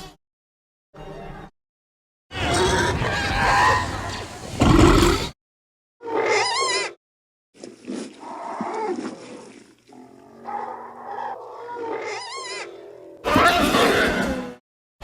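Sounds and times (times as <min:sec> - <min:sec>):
creature warbling cry: 0:02.3 - 0:05.3, 0:06.0 - 0:06.9, 0:10.4 - 0:14.5
creature growling roaring call: 0:02.3 - 0:05.4, 0:10.0 - 0:13.6.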